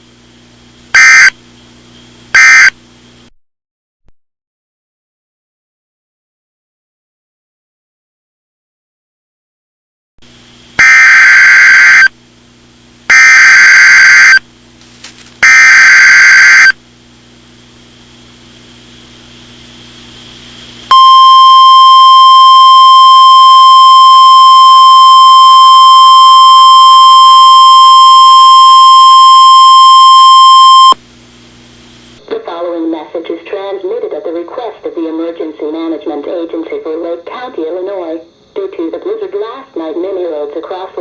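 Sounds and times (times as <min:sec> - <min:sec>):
data screech bursts: 0:10.8 - 0:12.1, 0:13.1 - 0:14.4, 0:15.4 - 0:16.7
steady single-tone attention signal: 0:20.9 - 0:31.0.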